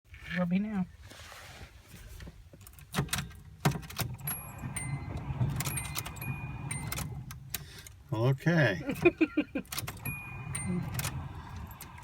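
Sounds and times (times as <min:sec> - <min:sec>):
car keys jangling in ignition: 0:02.6 - 0:08.0, 0:08.9 - 0:12.0.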